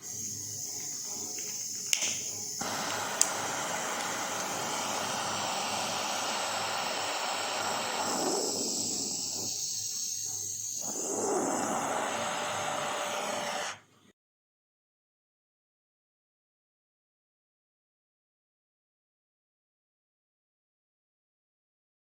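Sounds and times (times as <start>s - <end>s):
blow torch hissing: 0.0s - 13.9s
sharp clicks: 0.7s - 4.6s.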